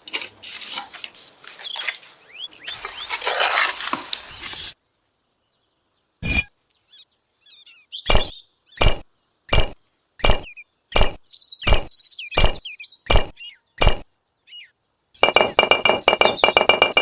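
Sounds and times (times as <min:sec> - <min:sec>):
faint bird-like chirps: 0:04.3 - 0:17.0
sharp taps: 0:15.2 - 0:17.0.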